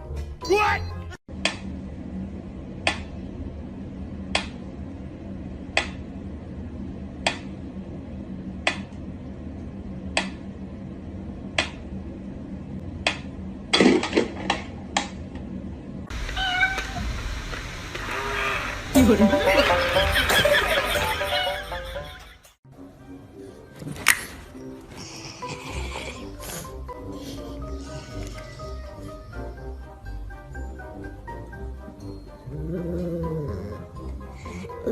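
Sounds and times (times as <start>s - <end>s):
steady low hum: 1.3s - 22.6s
cat calling: 16.2s - 17.1s.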